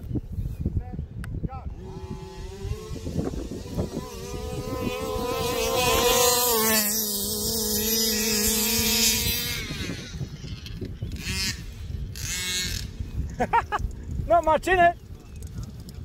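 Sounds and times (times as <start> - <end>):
two-stroke engines buzzing: 1.7 - 14.1.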